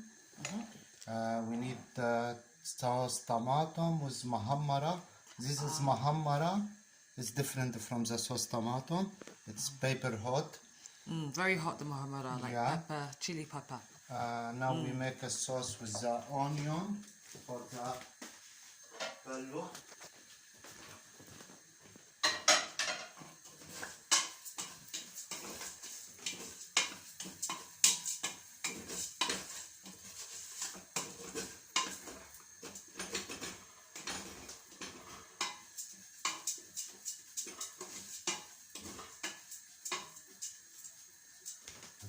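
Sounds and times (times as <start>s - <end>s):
metal utensils clinking on pots: 22.2s - 40.6s.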